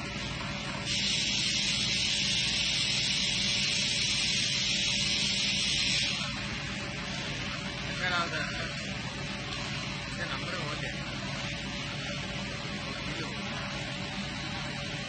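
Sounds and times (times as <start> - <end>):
low machine hum: 0.0 - 15.0
escaping air hissing: 0.9 - 6.3.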